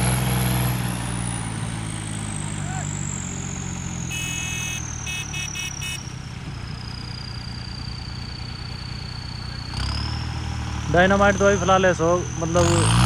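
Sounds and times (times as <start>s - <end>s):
tractor diesel engine running: 0.0s - 13.0s
short electronic beeps: 4.0s - 9.9s
high whine falling in pitch: 4.1s - 6.1s.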